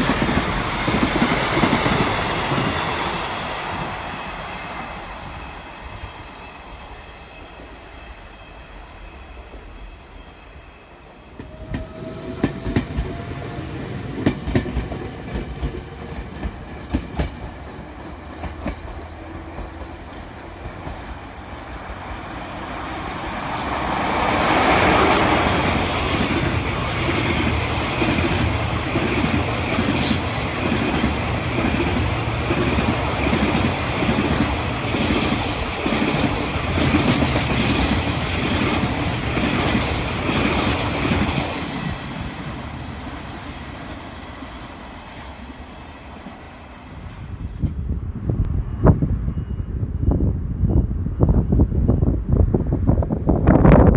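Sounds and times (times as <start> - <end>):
train wheels clickety-clack: 0.0 - 5.5, 11.3 - 21.2, 23.4 - 42.5
locomotive passing: 0.0 - 51.2.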